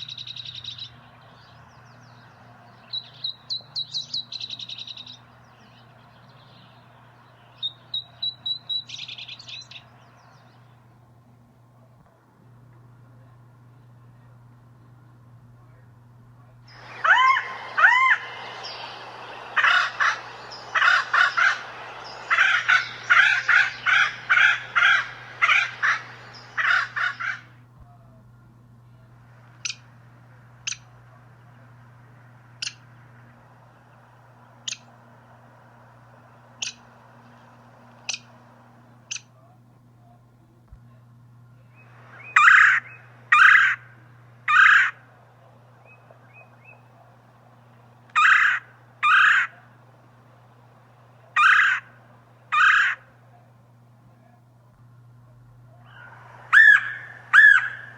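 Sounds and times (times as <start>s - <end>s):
bird harsh rasping calls: 0.0s - 1.3s, 2.0s - 10.3s, 16.7s - 27.6s, 36.2s - 39.3s, 42.0s - 45.1s, 48.1s - 49.8s, 51.3s - 53.2s, 55.8s - 57.9s.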